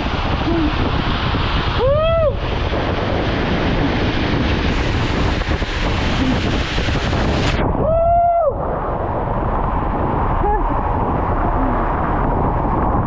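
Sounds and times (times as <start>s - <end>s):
water rushing: 0.0s - 13.0s
wind buffeting microphone: 0.0s - 13.0s
long held whoop: 1.8s - 2.4s, 7.7s - 8.8s
person shouting woo: 1.8s - 2.4s, 7.8s - 8.6s.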